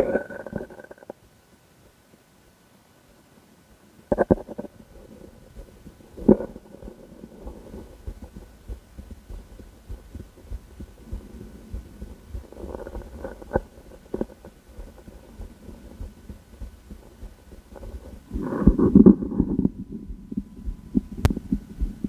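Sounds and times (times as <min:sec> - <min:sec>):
low hum: 0:04.1 - 0:22.0
heartbeat thumps through stethoscope: 0:05.5 - 0:22.0
rustles and knocks: 0:05.5 - 0:22.0.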